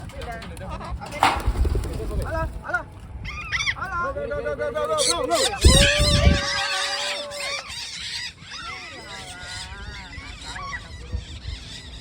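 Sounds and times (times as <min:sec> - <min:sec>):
parrots squawking: 0:04.9 - 0:12.0.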